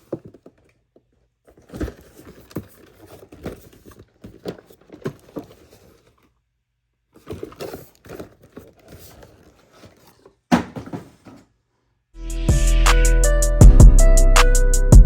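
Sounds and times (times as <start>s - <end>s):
light knocks and crinkling: 0.0s - 6.4s, 7.1s - 11.5s.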